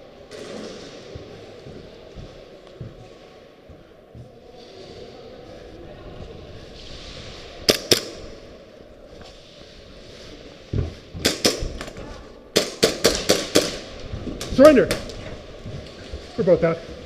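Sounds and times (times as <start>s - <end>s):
airsoft gun shots: 7.7s - 8.2s, 11.2s - 11.9s.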